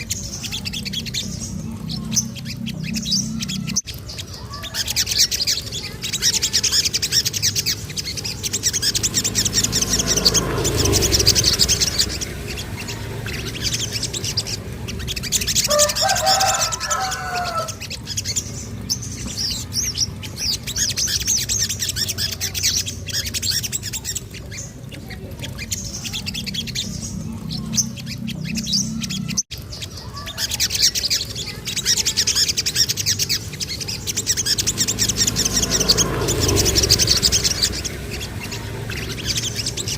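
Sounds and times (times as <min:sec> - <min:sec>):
lower warbling bird call: 0:00.0 - 0:39.9
songbird chirping trills: 0:00.0 - 0:39.9.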